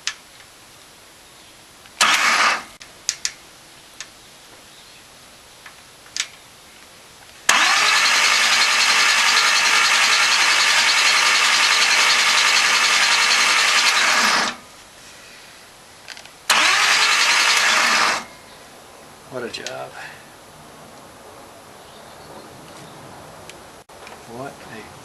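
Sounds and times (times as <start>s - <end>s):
engine cranking on starter motor: 2.0s - 2.7s, 7.5s - 14.6s, 16.5s - 18.3s.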